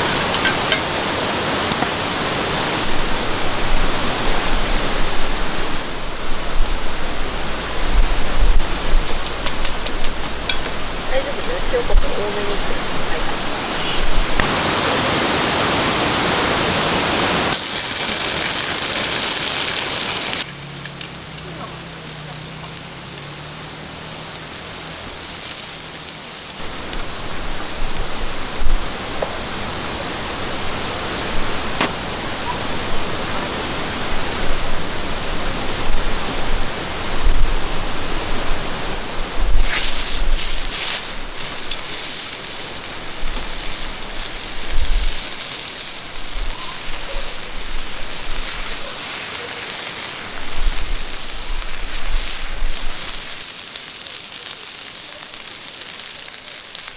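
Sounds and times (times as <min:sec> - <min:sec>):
food sizzling in frying pan: 0:00.0 - 0:56.9
steady high-pitched hiss: 0:00.0 - 0:56.9.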